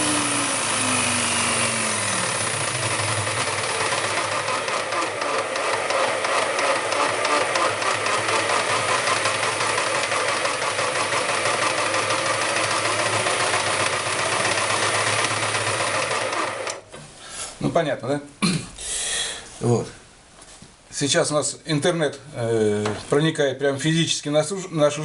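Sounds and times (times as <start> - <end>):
electric jigsaw running: 0.0 - 16.8.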